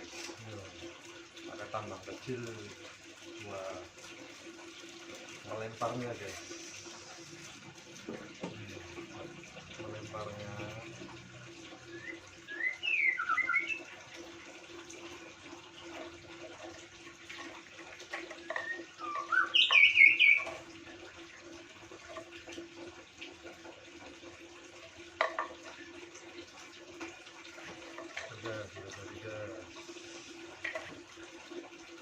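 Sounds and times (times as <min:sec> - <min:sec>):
bird chirping: 0:11.9 - 0:13.8, 0:18.6 - 0:20.5.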